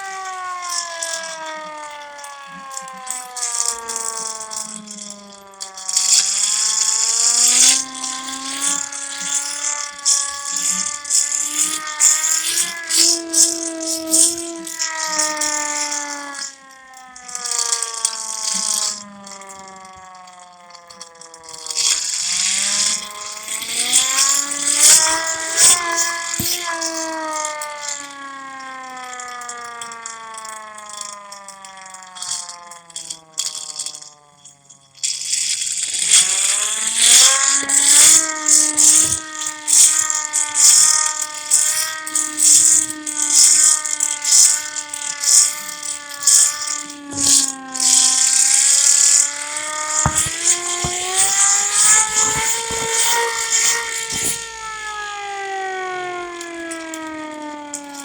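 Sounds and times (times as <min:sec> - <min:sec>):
siren winding up and down: 0:00.0 - 0:58.0
loud rattling noise: 0:05.8 - 0:15.9.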